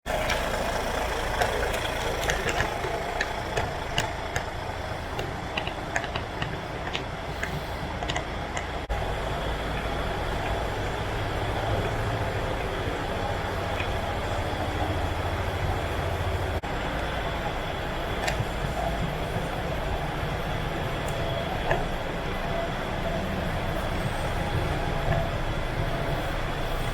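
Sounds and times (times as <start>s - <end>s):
diesel truck engine idling: 0.0s - 26.9s.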